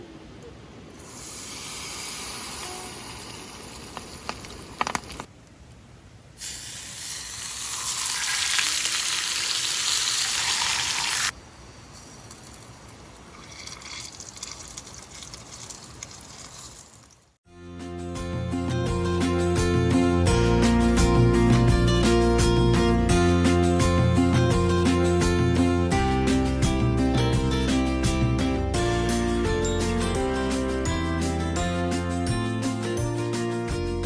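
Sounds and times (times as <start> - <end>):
food sizzling in hot oil: 1.0 - 4.8, 6.4 - 17.4.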